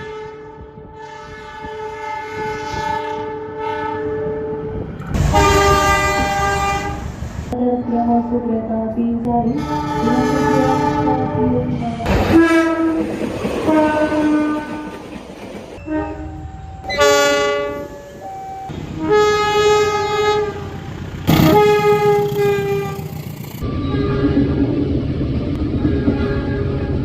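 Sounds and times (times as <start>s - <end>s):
locomotive air horn chords: 0.0s - 7.1s, 9.5s - 13.0s, 13.7s - 15.0s, 15.8s - 18.1s, 19.0s - 23.2s, 25.8s - 27.0s
running train rumble: 0.0s - 27.0s.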